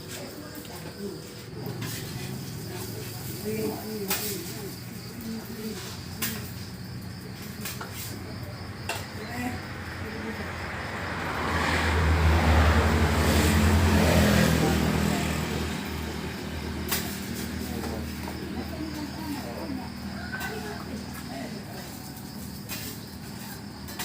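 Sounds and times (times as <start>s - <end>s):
vehicle passing: 0.0s - 5.2s, 8.2s - 24.0s.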